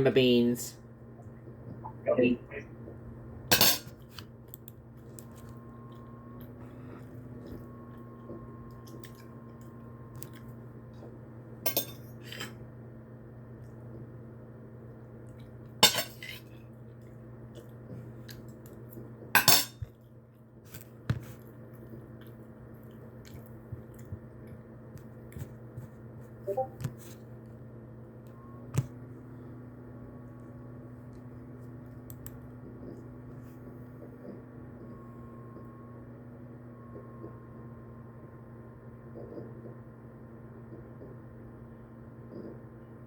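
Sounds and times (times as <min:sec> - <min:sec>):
radio hiss and hum: 0:01.5 - 0:03.8.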